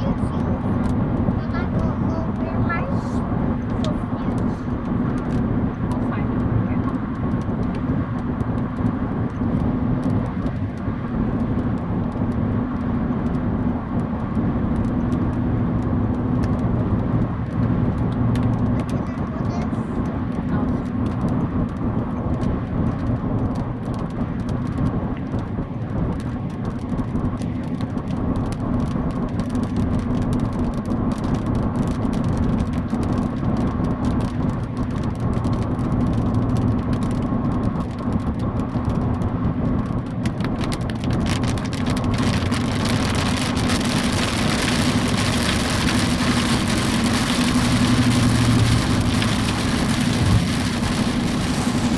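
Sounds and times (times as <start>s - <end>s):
low vehicle hum: 0.0s - 51.9s
rain hissing: 40.6s - 51.9s.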